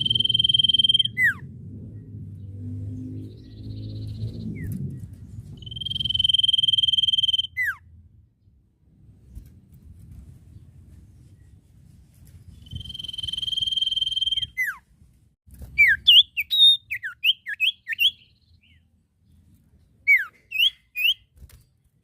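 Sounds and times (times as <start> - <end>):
bird whistling song: 0.0 - 1.5, 3.0 - 7.9, 12.5 - 14.8, 15.7 - 18.9, 20.0 - 21.3.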